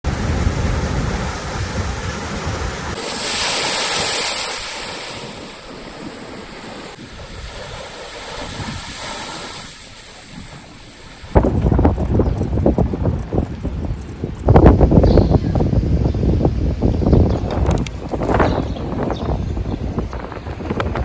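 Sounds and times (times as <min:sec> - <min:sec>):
wind rumbling on microphone: 0:00.0 - 0:21.0
waves washing in: 0:00.1 - 0:12.1.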